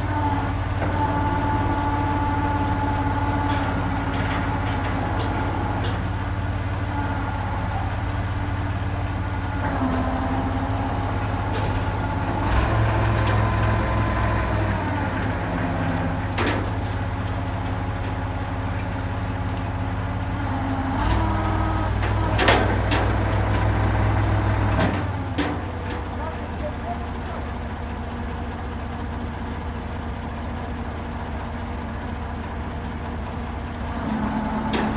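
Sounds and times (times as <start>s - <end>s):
crane engine running: 0.0s - 34.9s
sharp metallic clanks: 16.3s - 19.7s.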